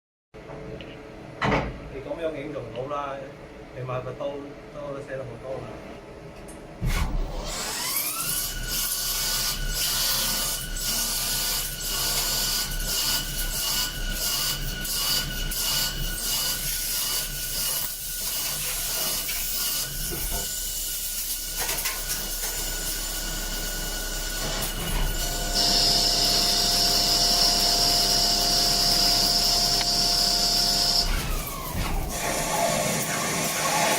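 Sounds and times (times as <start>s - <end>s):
cutter scraping workpiece: 6.9s - 33.9s.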